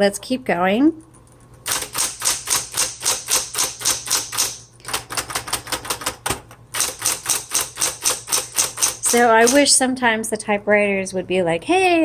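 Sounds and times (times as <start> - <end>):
electric typewriter typing: 1.6 - 9.8.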